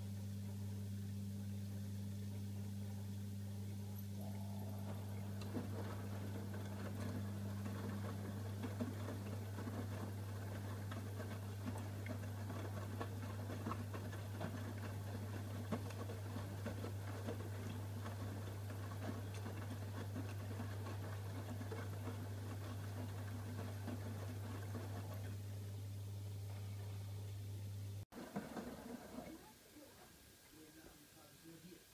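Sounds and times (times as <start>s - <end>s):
higher hum: 0.0s - 11.8s
washing machine humming: 0.0s - 31.6s.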